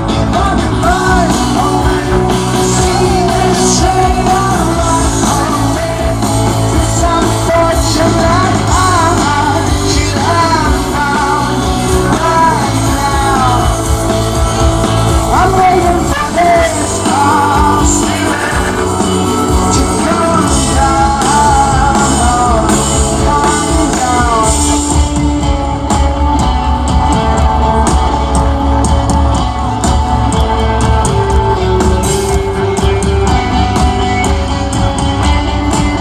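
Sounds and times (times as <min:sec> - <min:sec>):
lead vocal singing: 0:00.0 - 0:34.9
live rock band playing: 0:00.0 - 0:36.0
steady drum beat: 0:00.0 - 0:36.0.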